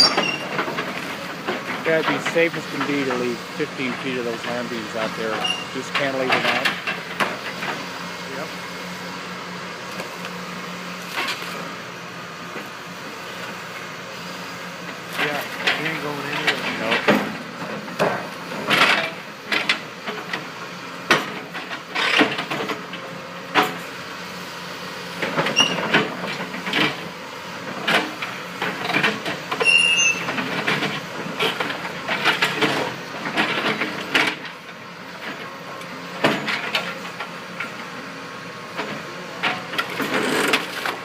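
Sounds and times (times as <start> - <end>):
high squeals of straining steel: 0.0 - 0.4, 5.4 - 5.8, 25.6 - 25.8, 29.6 - 30.3
metal clanks and creaks: 0.0 - 7.7
excavator engine running: 0.0 - 41.0.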